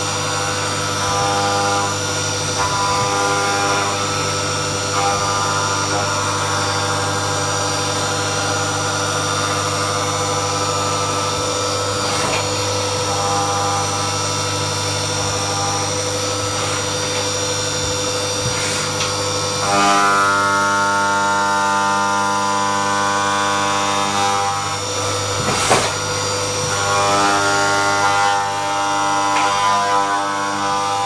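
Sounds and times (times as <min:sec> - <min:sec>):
cutting hiss: 0:18.0 - 0:19.8.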